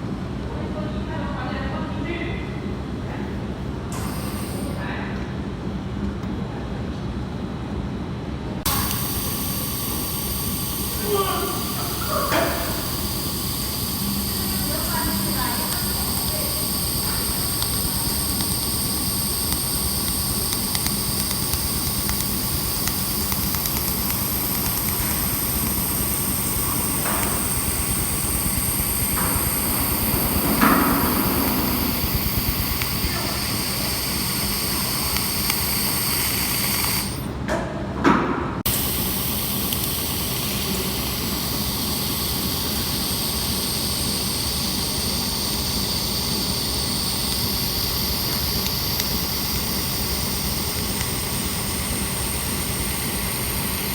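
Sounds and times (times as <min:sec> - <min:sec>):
welding machine hiss and hum: 0:03.8 - 0:04.9, 0:08.6 - 0:37.5, 0:38.6 - 0:53.9
high steady tones: 0:08.6 - 0:37.3, 0:38.7 - 0:53.9.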